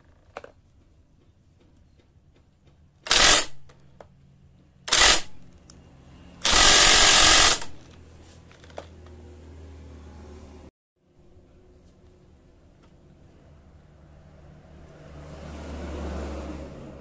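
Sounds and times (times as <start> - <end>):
impact wrench hammering: 3.1 - 3.8, 4.9 - 5.4, 6.4 - 7.9.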